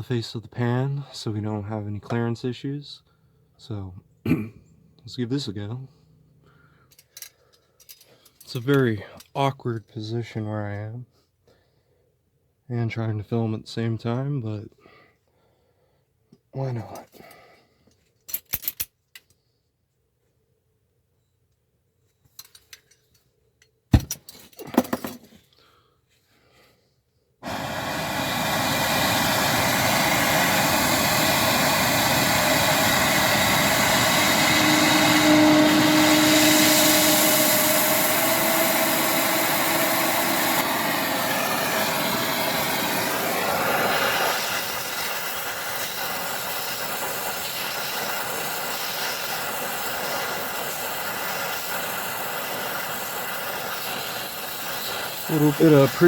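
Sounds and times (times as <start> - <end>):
torch flame hissing: 27.4 - 56.0.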